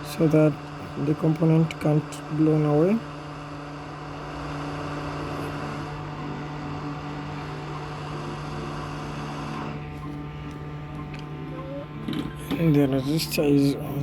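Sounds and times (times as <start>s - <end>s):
motor hum: 0.0s - 14.0s.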